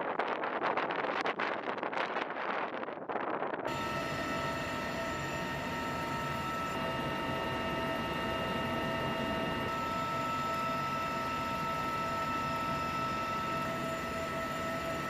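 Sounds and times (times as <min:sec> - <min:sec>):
helicopter turbine whine and rotor: 0:03.7 - 0:15.0.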